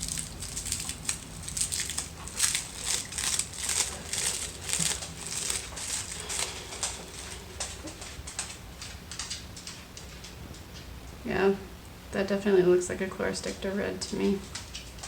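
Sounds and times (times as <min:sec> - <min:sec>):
packaging crinkling and rustling: 0:00.0 - 0:10.3.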